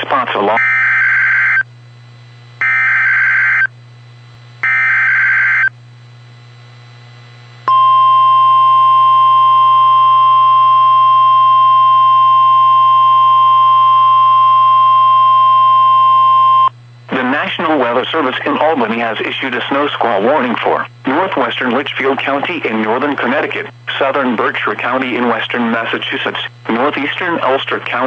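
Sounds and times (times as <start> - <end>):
loud steady attention tone: 4.6 - 5.8, 7.6 - 18.9.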